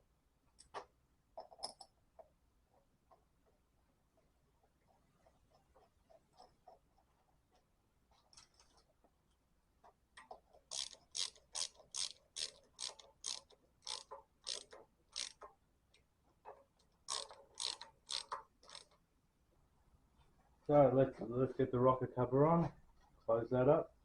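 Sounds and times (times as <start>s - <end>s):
socket ratchet clicking: 10.7s - 15.5s, 17.0s - 19.0s.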